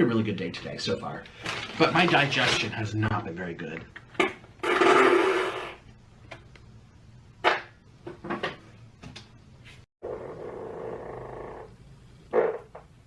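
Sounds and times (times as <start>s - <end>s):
loud fart: 4.6s - 5.8s, 10.0s - 13.0s.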